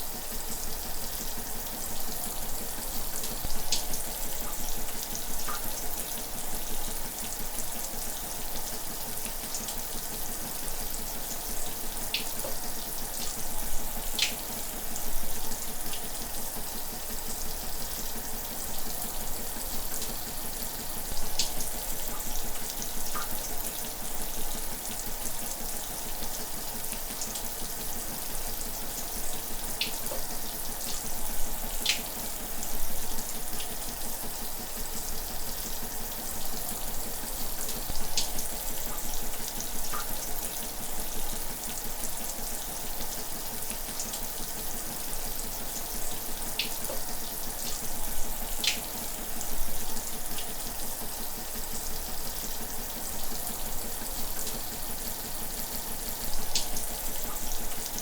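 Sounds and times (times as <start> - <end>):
shower running: 0.0 - 58.0.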